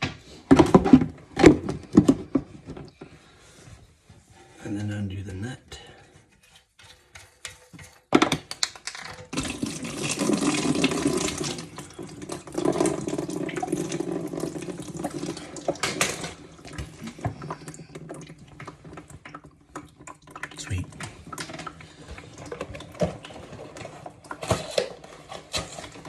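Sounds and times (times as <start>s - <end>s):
water running and splashing: 9.3s - 22.8s.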